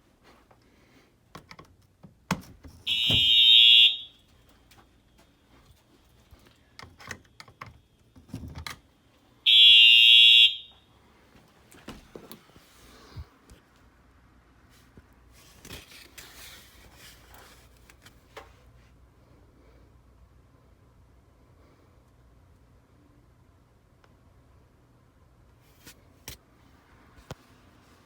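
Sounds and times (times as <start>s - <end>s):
fire alarm horn blast: 2.9s - 4.3s, 9.4s - 10.9s.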